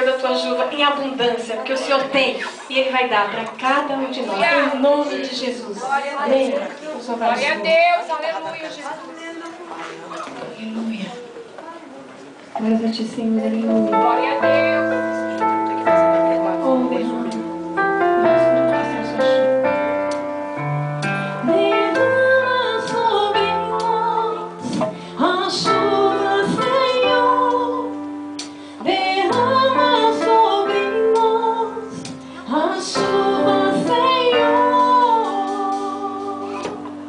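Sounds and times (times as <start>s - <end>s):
woman singing: 12.6s - 14.8s, 16.5s - 17.7s, 21.4s - 28.1s, 28.8s - 37.0s
keyboard chords: 13.3s - 37.0s.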